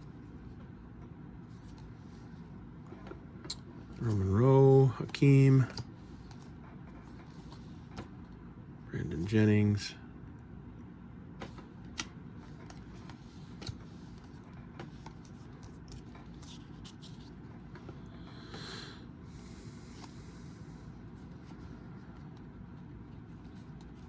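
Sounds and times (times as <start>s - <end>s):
low steady room hum: 0.0s - 24.0s
trading cards being flipped: 11.6s - 17.4s.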